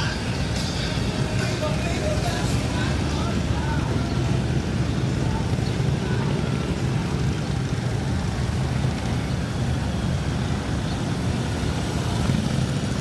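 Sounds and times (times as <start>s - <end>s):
motorcycle engines running: 0.0s - 13.0s.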